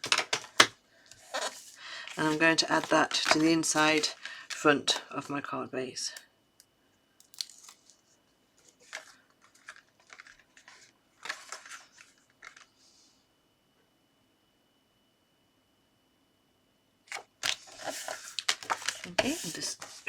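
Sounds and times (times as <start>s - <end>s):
cardstock rustling and scraping: 0.0s - 5.1s, 8.6s - 12.7s, 17.1s - 20.0s.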